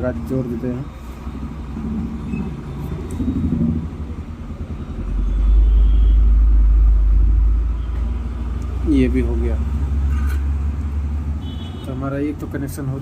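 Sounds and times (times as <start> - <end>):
low rumble: 1.4 - 7.7.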